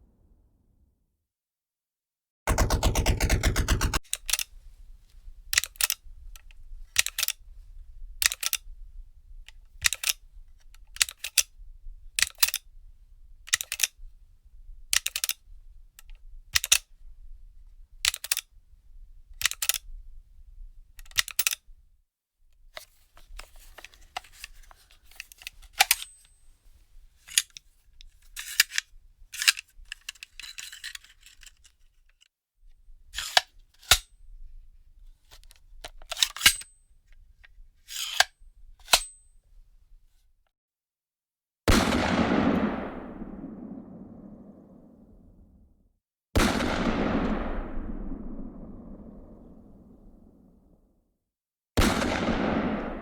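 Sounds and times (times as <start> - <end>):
gun action clicks: 2.5 - 4.6, 5.6 - 6.1, 7.0 - 7.4, 8.2 - 8.7, 9.8 - 11.5, 12.2 - 12.6, 13.5 - 14.0, 15.0 - 15.4, 16.0 - 16.8, 18.0 - 18.5, 19.4 - 19.9, 21.0 - 21.6, 23.2 - 26.4, 33.2 - 34.1
gun rattling: 2.5 - 7.5, 22.8 - 32.2.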